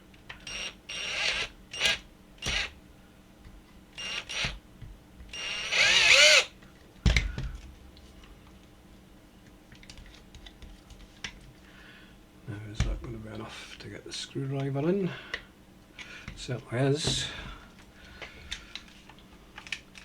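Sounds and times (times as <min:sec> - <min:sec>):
power drill boring plastic: 0:00.5 - 0:02.7, 0:04.0 - 0:04.6, 0:05.3 - 0:06.5.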